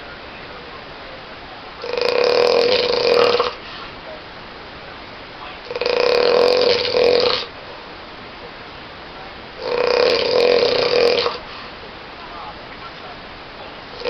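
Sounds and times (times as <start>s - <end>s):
person snoring loudly: 1.8s - 3.6s, 5.6s - 7.5s, 9.6s - 11.5s.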